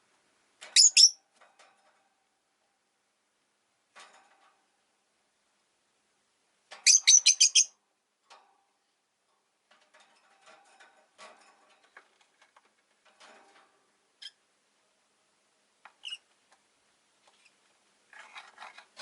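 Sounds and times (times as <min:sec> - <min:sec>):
lovebird chirping: 0:00.8 - 0:01.2, 0:06.8 - 0:07.7, 0:16.0 - 0:16.2
faint scratching: 0:17.2 - 0:19.0.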